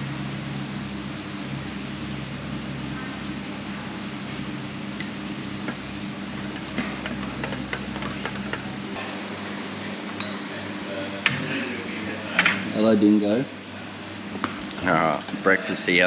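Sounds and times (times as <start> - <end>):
steady low hum: 0.0 - 16.0
dishes and cutlery clinking: 6.5 - 8.8.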